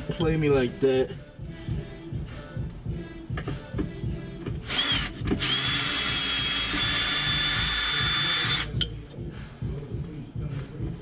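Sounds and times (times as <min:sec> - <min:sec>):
power drill whine: 0:04.7 - 0:08.7.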